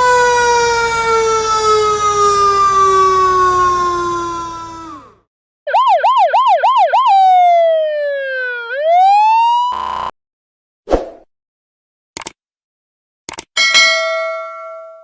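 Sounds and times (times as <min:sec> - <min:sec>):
police car siren: 0:00.0 - 0:10.1.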